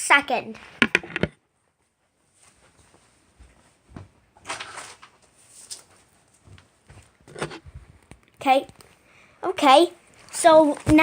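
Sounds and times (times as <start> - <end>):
objects rustling and knocking: 0.6 - 1.4, 2.4 - 8.9.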